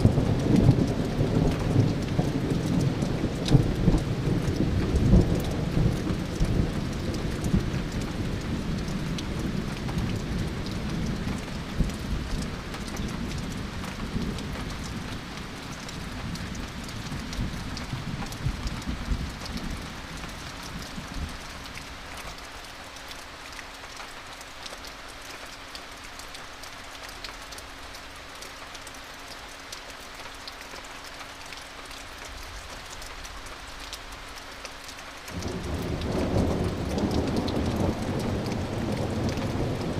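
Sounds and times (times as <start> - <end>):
rain pattering: 0.0 - 39.9
thunder rumbling: 35.4 - 39.9.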